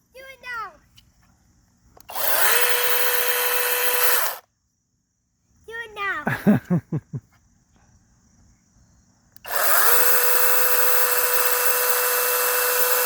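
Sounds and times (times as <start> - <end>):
mini chainsaw whining: 2.0 - 4.5, 9.4 - 13.0.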